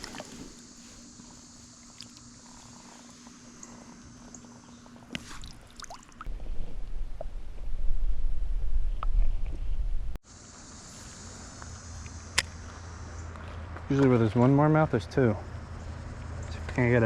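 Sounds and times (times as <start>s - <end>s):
deep rumbling on microphone: 6.3s - 10.2s.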